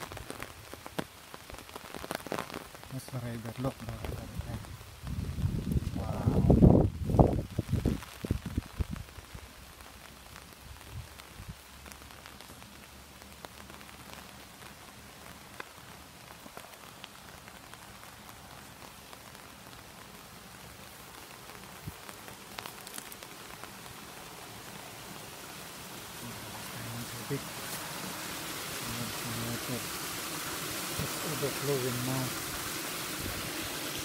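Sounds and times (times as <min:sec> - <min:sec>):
faint water splashes: 0:20.5 - 0:34.0
river water rushing: 0:21.1 - 0:34.0.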